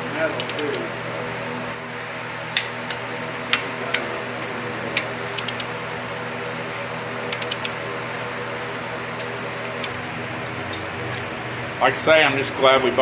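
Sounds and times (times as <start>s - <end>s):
shop fan humming: 0.0s - 13.0s.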